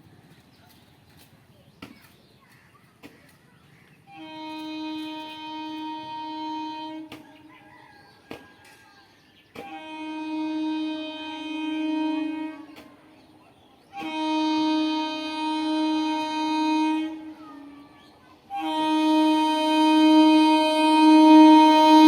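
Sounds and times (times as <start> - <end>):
train air horn blasts: 4.1 - 7.5, 9.6 - 13.2, 13.9 - 22.0.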